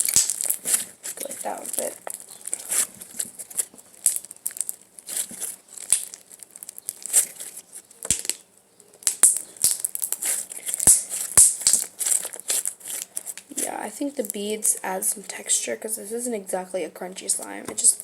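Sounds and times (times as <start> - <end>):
slime crackling and popping: 0.0 - 15.6.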